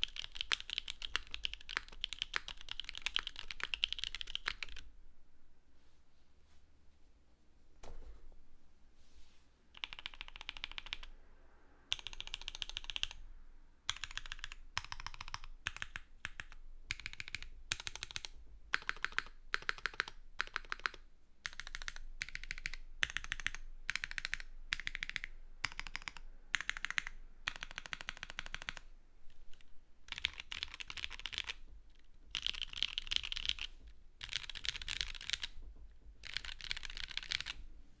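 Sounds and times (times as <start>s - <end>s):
mechanical keyboard typing: 0.0s - 4.8s, 9.8s - 11.1s, 11.9s - 13.2s, 13.9s - 28.8s, 29.5s - 31.6s, 32.2s - 35.6s, 36.2s - 37.6s.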